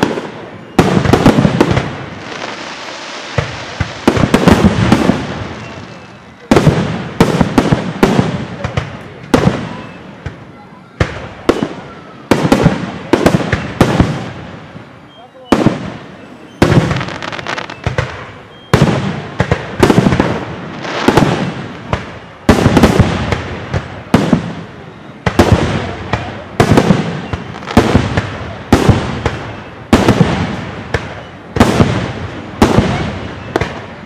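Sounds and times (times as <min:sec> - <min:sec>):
fireworks bangs: 0:00.0 - 0:34.0.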